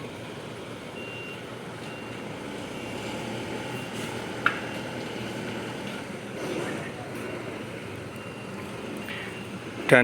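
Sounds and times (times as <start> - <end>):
background din of setup site: 0.0 - 10.0
faint high-pitched beeps: 1.0 - 2.2, 8.1 - 10.0.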